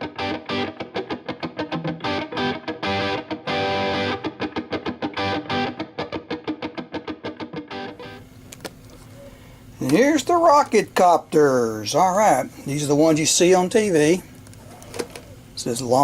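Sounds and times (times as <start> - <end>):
distorted electric guitar riff: 0.0 - 8.3.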